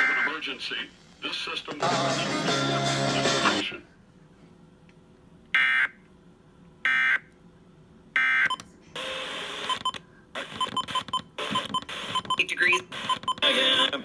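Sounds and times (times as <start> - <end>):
broadcast audio: 0.0 - 3.9, 11.5 - 14.0.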